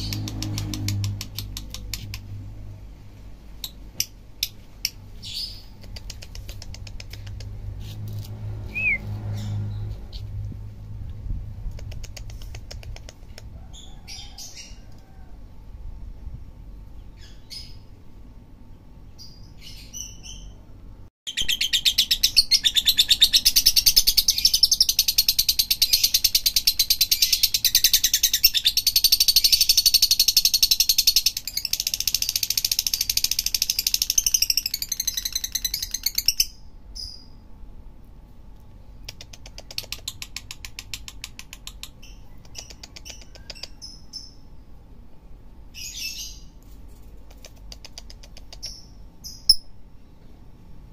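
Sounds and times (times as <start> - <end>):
bird chirping and trilling: 8.7 - 10.3, 19.2 - 20.6, 21.3 - 37.4, 41.8 - 44.5, 45.7 - 46.6, 48.6 - 49.8.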